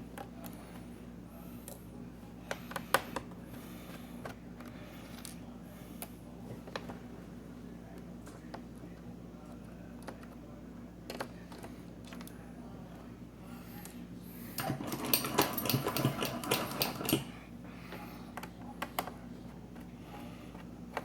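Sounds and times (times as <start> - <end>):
rapid clicking and rattling: 14.6 - 17.3.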